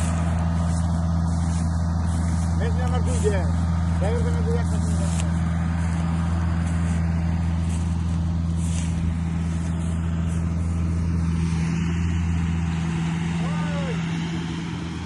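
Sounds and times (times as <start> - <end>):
harvesting machine engine drone: 0.0 - 15.0.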